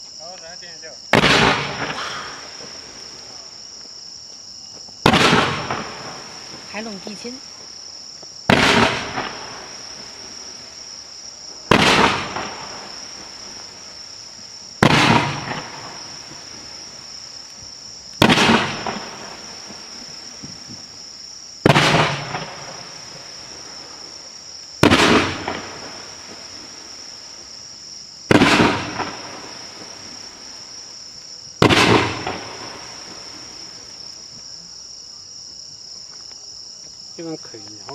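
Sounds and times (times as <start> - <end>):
insects trilling: 0.0 - 37.9
firework bangs: 1.1 - 3.6, 5.0 - 7.4, 8.4 - 14.0, 14.6 - 21.0, 21.6 - 27.6, 28.2 - 30.8, 31.6 - 34.1.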